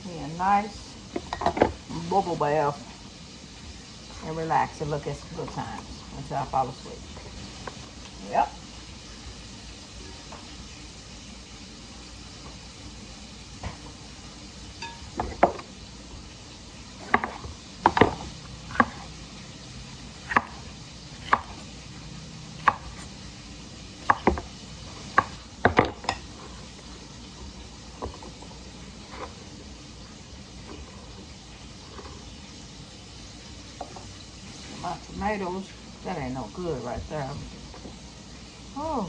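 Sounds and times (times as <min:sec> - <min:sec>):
knife chopping on cutting board: 0:17.0 - 0:19.1, 0:20.2 - 0:21.7, 0:22.6 - 0:23.1, 0:24.0 - 0:26.2.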